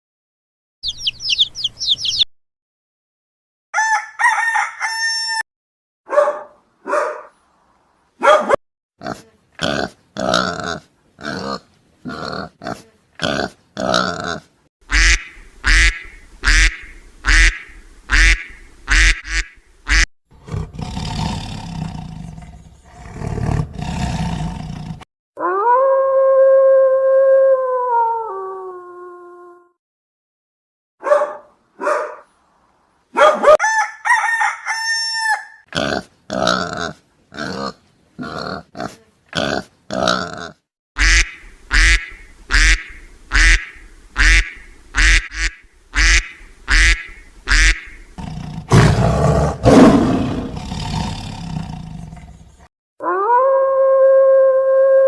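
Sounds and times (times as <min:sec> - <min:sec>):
chicken calls: 0:00.8 - 0:02.3, 0:03.8 - 0:05.4, 0:14.9 - 0:20.0, 0:33.2 - 0:35.7, 0:41.0 - 0:48.1
animal growling: 0:20.4 - 0:25.1, 0:48.2 - 0:52.5.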